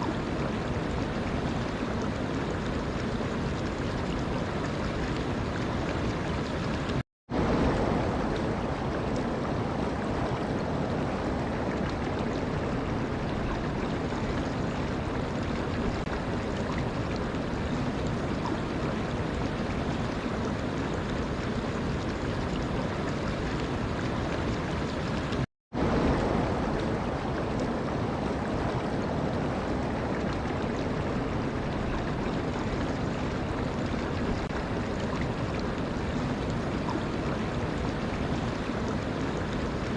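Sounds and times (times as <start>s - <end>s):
running water rushing: 0.0s - 39.9s.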